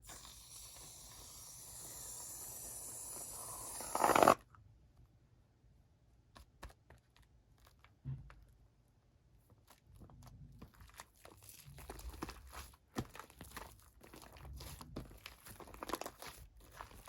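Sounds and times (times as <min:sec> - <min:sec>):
aerosol can spraying: 0:00.0 - 0:04.4
aerosol sputter: 0:00.0 - 0:04.4.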